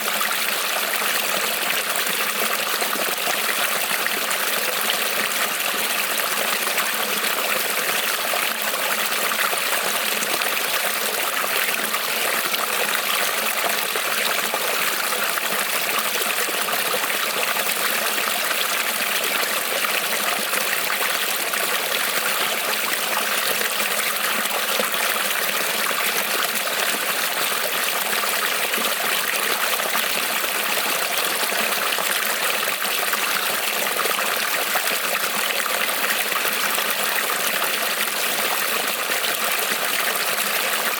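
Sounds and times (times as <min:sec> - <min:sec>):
creek trickling over stones: 0:00.0 - 0:40.9.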